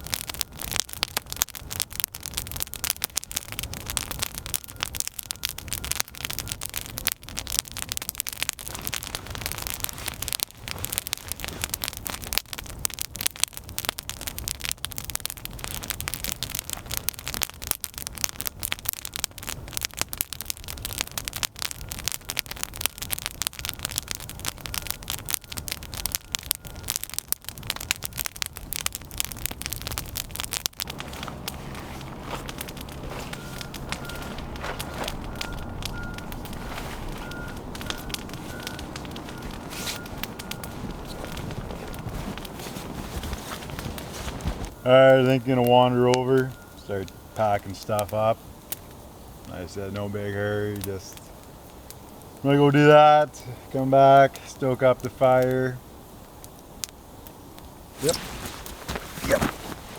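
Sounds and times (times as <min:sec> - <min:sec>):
campfire crackling and popping: 0:00.0 - 0:59.9
low rumble: 0:30.8 - 0:43.4.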